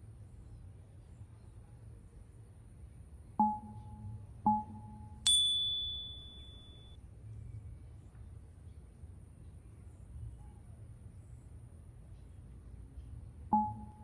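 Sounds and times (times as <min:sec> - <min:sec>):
chime tones: 0:03.4 - 0:07.0.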